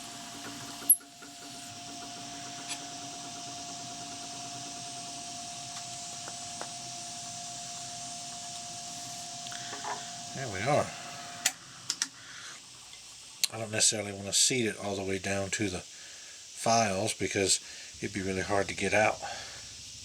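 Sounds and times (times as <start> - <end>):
turning tool cutting wood: 0.0 - 13.0
wood lathe whining: 0.0 - 15.4.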